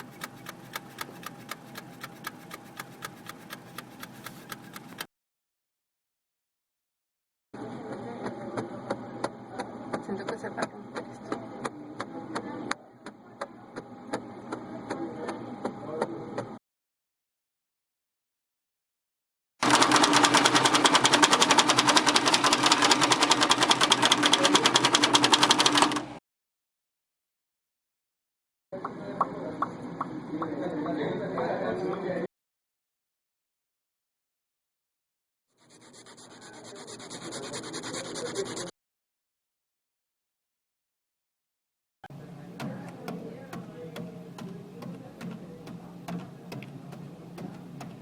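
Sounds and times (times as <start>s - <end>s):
rapid even ticking: 0.0s - 5.1s, 19.6s - 26.0s
rapid mechanical clatter: 0.0s - 5.1s, 19.6s - 26.2s, 42.2s - 48.0s.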